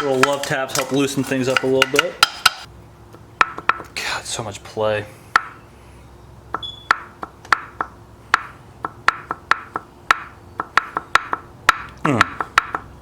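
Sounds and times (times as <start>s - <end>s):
hammer tapping on metal: 1.5s - 2.7s, 3.4s - 3.9s, 5.4s - 5.6s, 6.5s - 12.9s.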